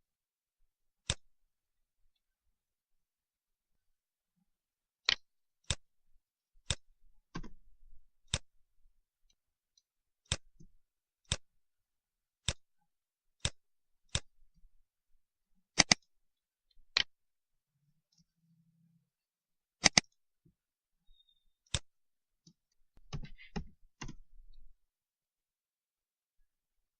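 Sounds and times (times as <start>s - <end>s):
computer mouse clicking: 1.0s - 1.3s, 6.6s - 7.6s, 8.3s - 8.5s, 10.2s - 10.7s, 11.3s - 11.5s, 12.4s - 12.7s, 13.4s - 14.3s, 15.8s - 16.1s, 19.8s - 20.2s, 21.6s - 21.9s, 22.5s - 24.6s.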